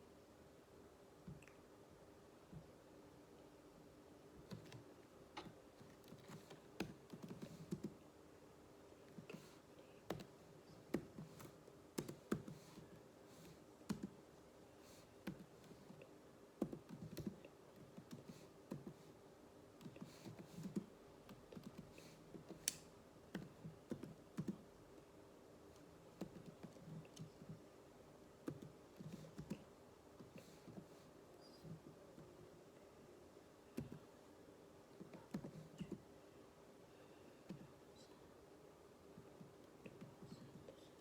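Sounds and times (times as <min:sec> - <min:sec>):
low steady hum: 0:00.0 - 0:41.0
keyboard typing: 0:04.4 - 0:08.0, 0:09.2 - 0:14.2, 0:16.6 - 0:19.0, 0:19.8 - 0:24.6, 0:26.1 - 0:27.6, 0:28.4 - 0:29.6.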